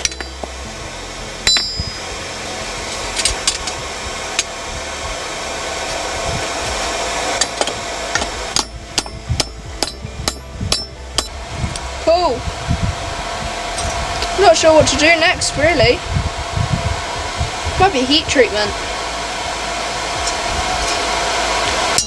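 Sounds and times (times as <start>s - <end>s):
hammer striking steel: 0.0s - 4.6s, 7.4s - 12.3s
steady rushing noise: 0.0s - 22.0s.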